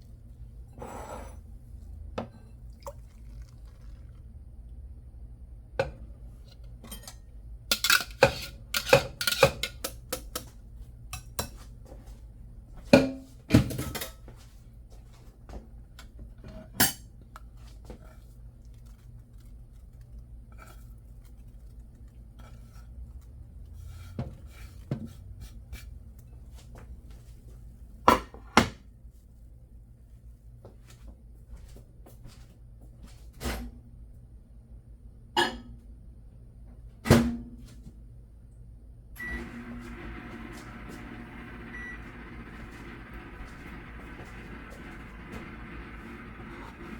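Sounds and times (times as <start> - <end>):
dishes and utensils clinking: 6.8 - 10.4.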